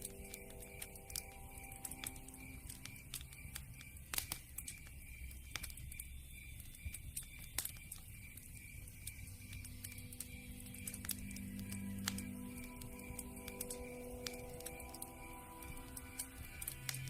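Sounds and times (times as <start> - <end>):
campfire crackling and popping: 0.0 - 17.0
soft background music: 0.0 - 17.0.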